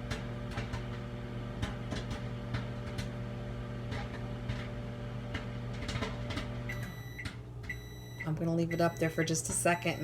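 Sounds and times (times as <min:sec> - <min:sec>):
popcorn popping: 0:00.0 - 0:08.4
microwave oven humming: 0:00.0 - 0:10.0.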